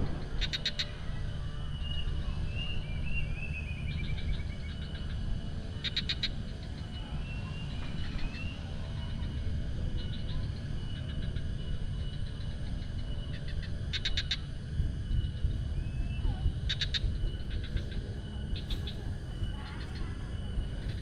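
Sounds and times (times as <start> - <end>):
bird whistled glides: 0.0 - 21.0
birds calling: 0.0 - 21.0
constant low rumble: 0.0 - 21.0
bird rapid chattering notes: 0.2 - 1.0, 16.1 - 19.1.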